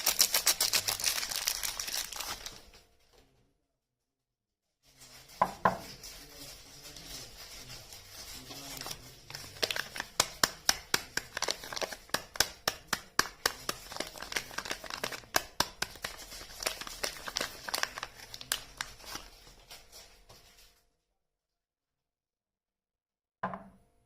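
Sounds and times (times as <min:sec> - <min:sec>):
packaging crinkling and tearing: 0:00.0 - 0:02.8, 0:07.4 - 0:19.9.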